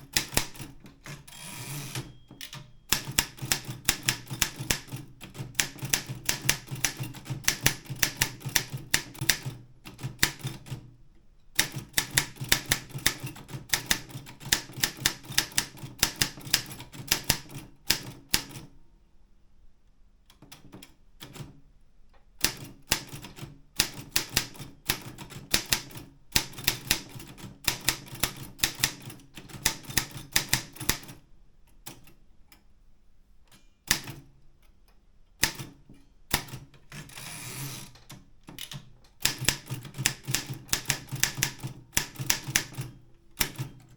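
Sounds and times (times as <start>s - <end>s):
manual typewriter key strikes: 0.0s - 10.8s, 35.4s - 43.8s.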